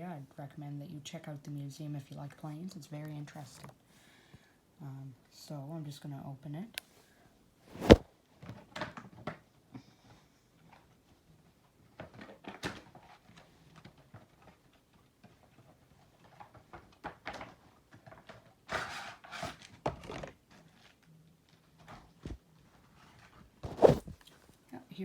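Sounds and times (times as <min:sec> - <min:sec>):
cardboard box handled and opened: 0:07.7 - 0:08.0, 0:23.7 - 0:24.2.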